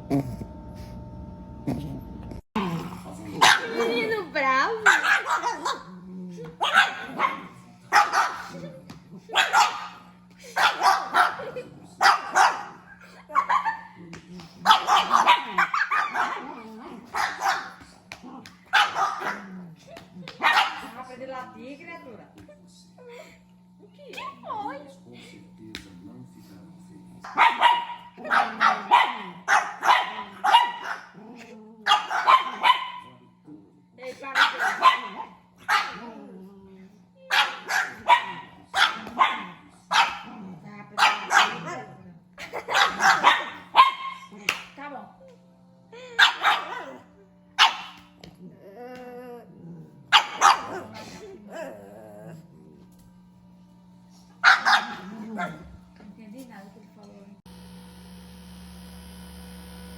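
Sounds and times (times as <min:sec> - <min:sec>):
dog whining and grumbling: 0:00.0 - 0:00.9, 0:01.6 - 0:04.1, 0:48.2 - 0:50.1, 0:50.7 - 0:52.9
dog barking: 0:03.4 - 0:04.1, 0:04.8 - 0:05.9, 0:06.6 - 0:08.7, 0:09.3 - 0:14.0, 0:14.6 - 0:17.9, 0:18.6 - 0:19.5, 0:20.2 - 0:21.1, 0:27.3 - 0:31.2, 0:31.8 - 0:33.2, 0:34.2 - 0:36.1, 0:37.3 - 0:44.4, 0:46.2 - 0:48.1, 0:50.1 - 0:51.2, 0:54.4 - 0:55.7
dog barking sharply: 0:10.6 - 0:11.4, 0:14.7 - 0:16.4, 0:18.7 - 0:19.4, 0:27.3 - 0:31.1, 0:31.9 - 0:33.0, 0:54.4 - 0:55.5.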